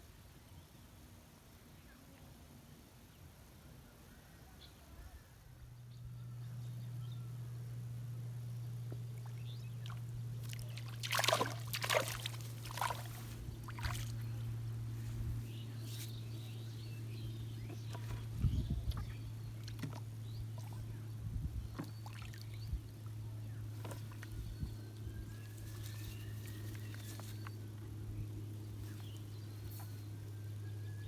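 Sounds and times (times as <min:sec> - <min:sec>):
steady low hum: 0:04.9 - 0:31.0
water splashing and sloshing: 0:09.0 - 0:14.6, 0:17.6 - 0:20.9, 0:21.7 - 0:24.5.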